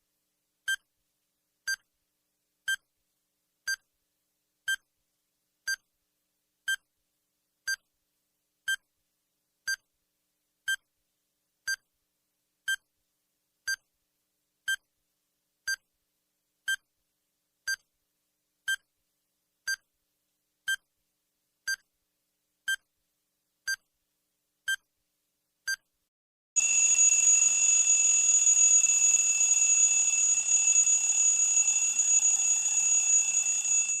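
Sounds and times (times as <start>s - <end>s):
continuous alarm ring: 26.6s - 34.0s
short electronic beeps: 26.6s - 34.0s.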